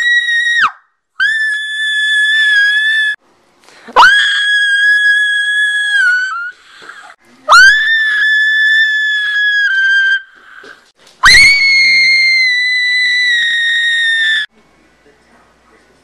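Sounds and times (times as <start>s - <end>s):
high-pitched screaming: 11.2s - 14.5s.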